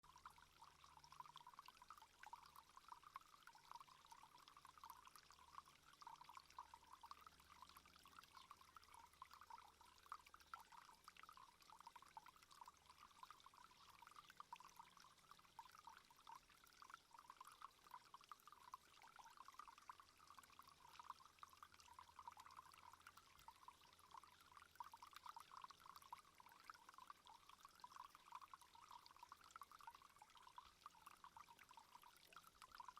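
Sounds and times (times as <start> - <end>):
water trickling: 0.0 - 32.9.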